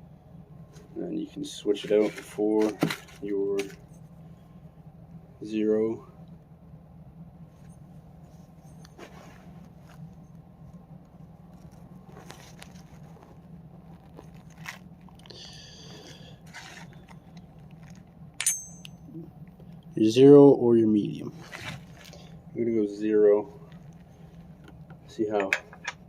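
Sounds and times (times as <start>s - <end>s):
metal parts rattle: 18.4s - 18.9s, 25.3s - 26.0s
small metal parts clicking: 18.4s - 19.0s.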